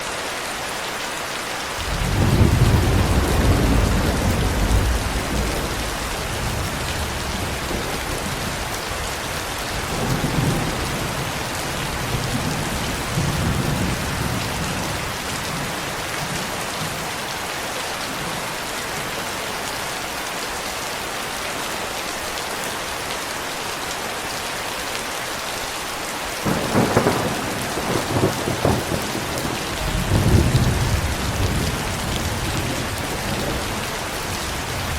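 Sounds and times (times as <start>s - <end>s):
steady rain: 0.0s - 34.9s
rolling thunder: 1.8s - 17.0s, 26.4s - 34.9s.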